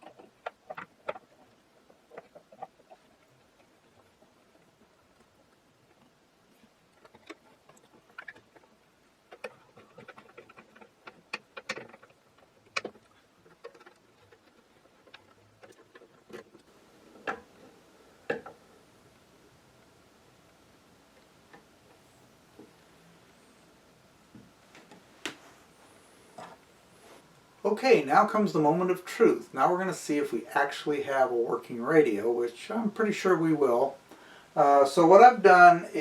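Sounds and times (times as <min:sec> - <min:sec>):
small objects clicking and tapping: 0:09.3 - 0:17.5.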